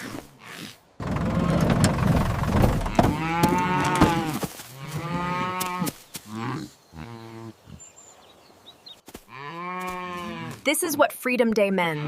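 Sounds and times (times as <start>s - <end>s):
cattle mooing: 2.9s - 7.6s.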